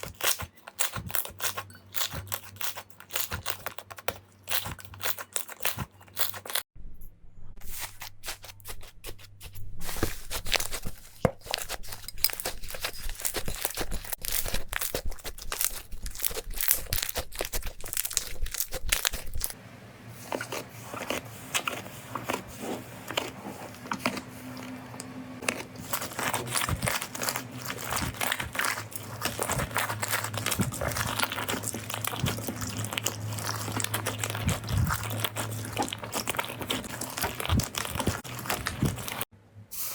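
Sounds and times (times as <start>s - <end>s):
slime crackling and popping: 12.5s - 19.6s, 25.6s - 39.3s.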